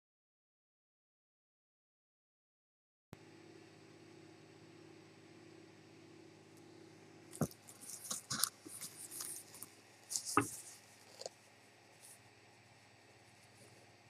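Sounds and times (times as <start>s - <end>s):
handling clicks and rustles: 7.4s - 11.3s.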